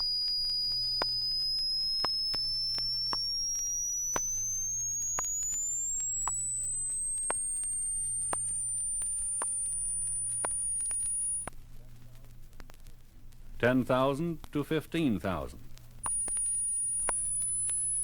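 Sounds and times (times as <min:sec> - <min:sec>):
rising sine tone sweep: 0:00.0 - 0:11.5, 0:16.0 - 0:18.0
low steady hum: 0:00.0 - 0:18.0.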